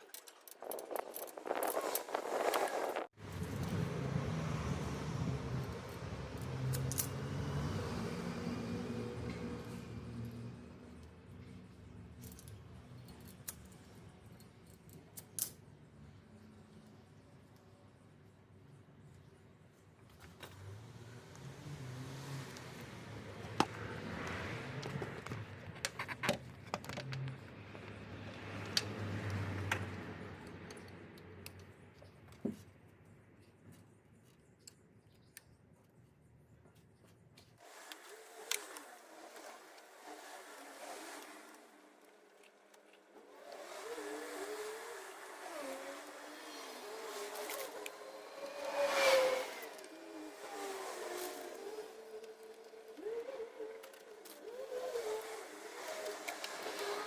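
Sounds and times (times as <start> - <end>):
tools clicking and clinking: 0.0 - 2.8, 5.6 - 7.2, 12.1 - 15.6
vehicle engine: 1.5 - 13.0, 20.2 - 32.0, 37.6 - 57.0.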